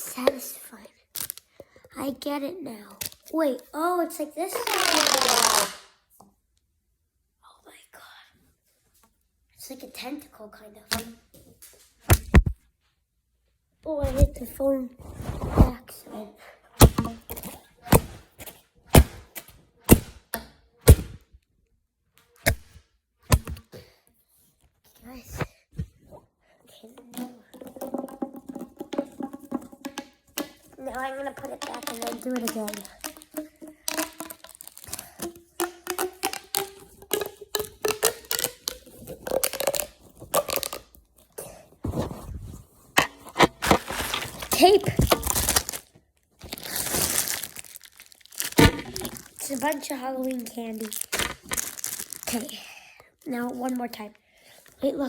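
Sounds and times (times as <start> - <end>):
plastic fidget toy clicks: 29.9 - 40.9.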